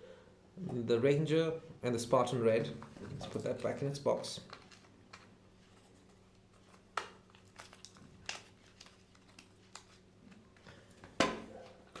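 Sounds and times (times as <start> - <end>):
packaging rustling: 2.8 - 11.7.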